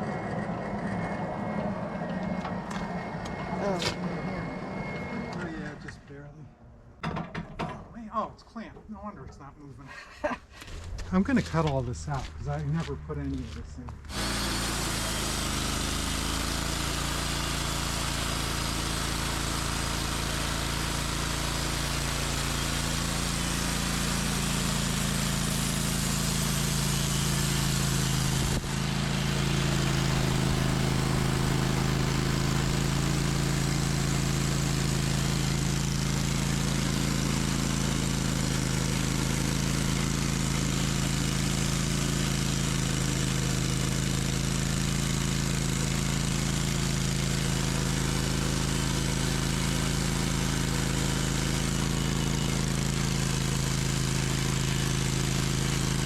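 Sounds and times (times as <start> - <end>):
sawmill engine running: 0.0 - 6.3, 10.6 - 56.0.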